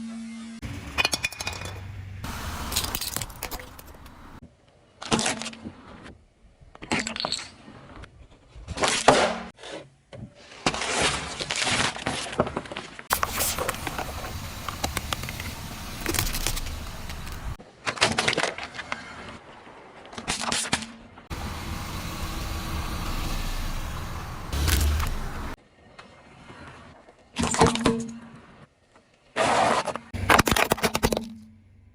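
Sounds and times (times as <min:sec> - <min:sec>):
objects crunching under car tyres: 0:02.2 - 0:04.4, 0:11.2 - 0:17.6, 0:21.3 - 0:25.6.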